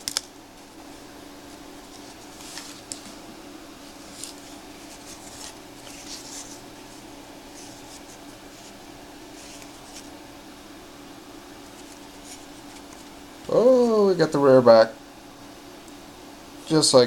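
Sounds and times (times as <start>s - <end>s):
cards swishing by hand: 0.0s - 10.2s, 11.6s - 13.6s
low room hum: 0.0s - 17.0s.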